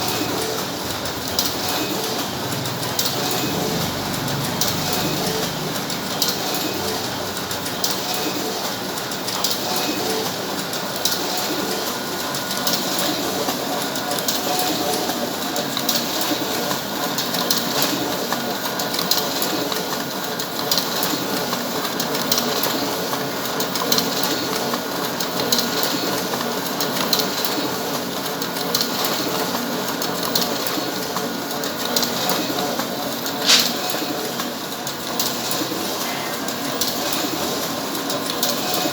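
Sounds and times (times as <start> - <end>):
photocopier whirring: 0.0 - 13.4, 32.6 - 34.6
photocopier clacking: 33.3 - 34.1.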